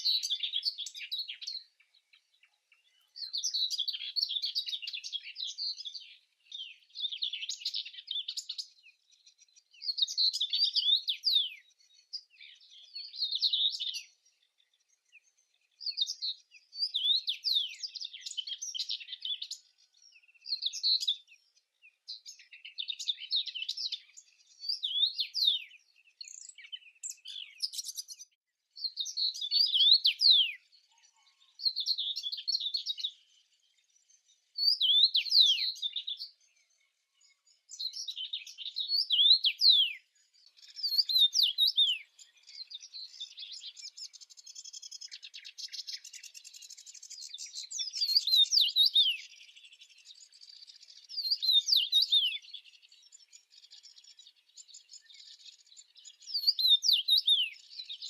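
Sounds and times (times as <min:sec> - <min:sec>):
songbird twittering: 0:00.0 - 0:58.0.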